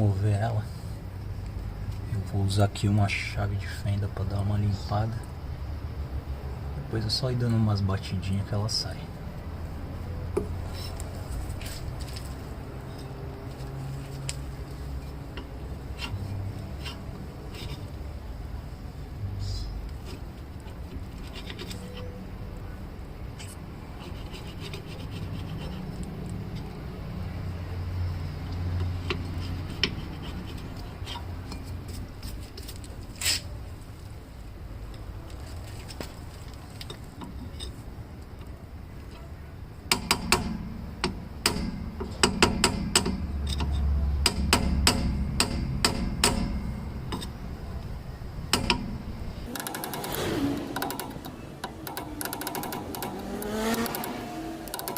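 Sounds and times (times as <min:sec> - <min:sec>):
screwdriver scraping metal: 0:15.0 - 0:17.9, 0:20.0 - 0:22.2, 0:23.4 - 0:26.0, 0:29.0 - 0:31.8, 0:48.6 - 0:54.9
screwdriver tapping on metal cap: 0:50.8 - 0:53.2.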